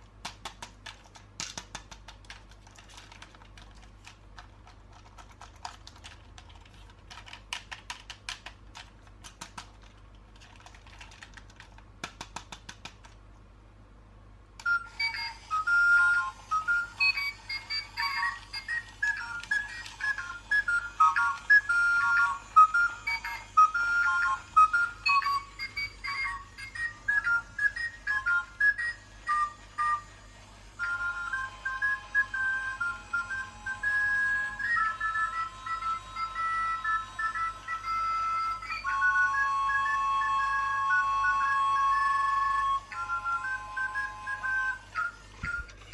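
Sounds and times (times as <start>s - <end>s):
toy playing beeping electronic tune: 14.6s - 45.9s.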